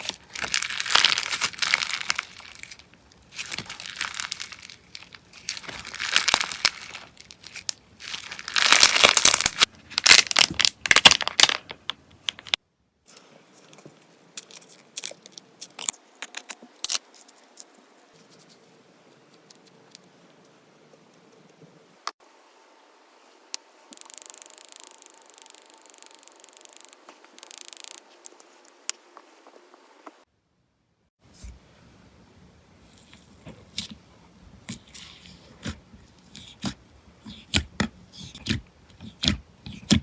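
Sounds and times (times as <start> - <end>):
slime squeezed crackling: 0.0 - 11.6.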